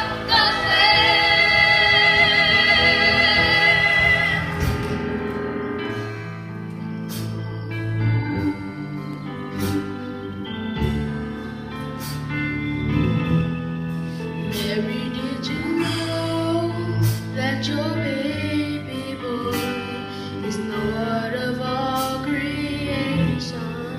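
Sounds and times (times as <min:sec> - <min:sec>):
choir singing a chord: 0:00.0 - 0:05.1
sustained accompaniment chords: 0:00.0 - 0:21.9
bass notes: 0:00.0 - 0:23.9.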